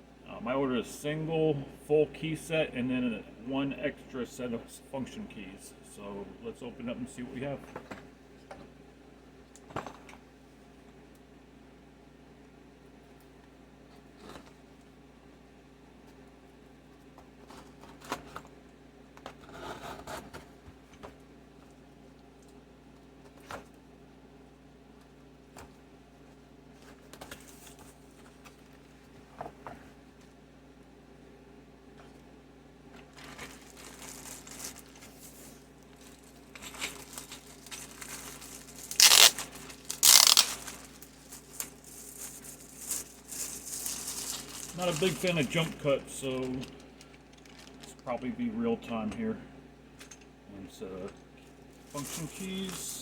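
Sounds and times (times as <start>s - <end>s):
faint steady hum: 0.0s - 53.0s
packaging rustling and crinkling: 33.0s - 48.1s, 51.8s - 53.0s
packaging scraping and tearing: 33.1s - 45.7s, 52.0s - 52.9s.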